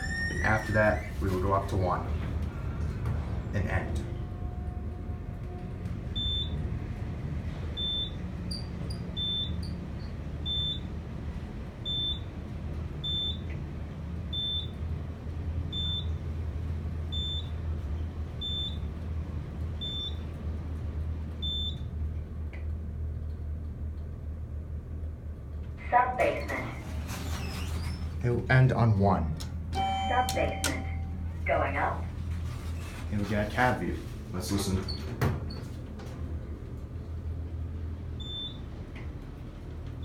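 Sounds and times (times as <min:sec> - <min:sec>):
elevator short high beeps: 0:00.0 - 0:01.1, 0:06.2 - 0:06.6, 0:07.8 - 0:10.9, 0:11.8 - 0:12.3, 0:13.0 - 0:13.5, 0:14.3 - 0:14.8, 0:15.7 - 0:16.2, 0:17.1 - 0:17.5, 0:18.4 - 0:18.9, 0:19.8 - 0:20.2, 0:21.4 - 0:21.9, 0:29.8 - 0:31.3, 0:38.2 - 0:38.7
elevator car humming: 0:00.0 - 0:40.0.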